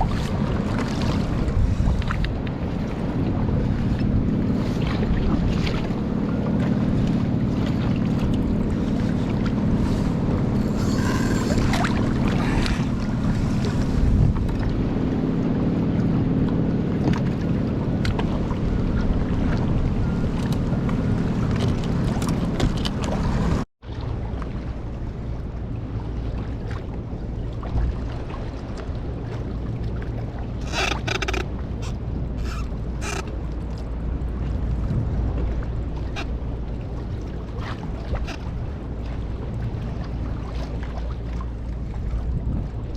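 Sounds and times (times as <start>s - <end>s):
wind buffeting microphone: 0.0s - 23.6s, 41.6s - 42.9s
low hum: 6.0s - 17.0s.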